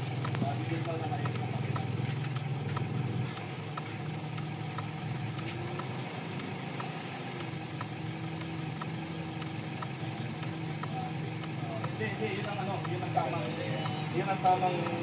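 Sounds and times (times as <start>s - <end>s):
car engine idling: 0.0s - 15.0s
light engine ticking: 0.0s - 15.0s.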